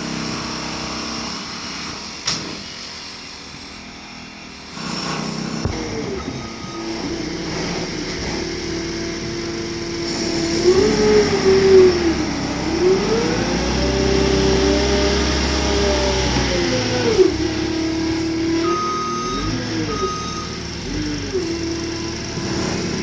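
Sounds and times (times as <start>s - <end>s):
diesel engine revving: 4.2s - 23.0s.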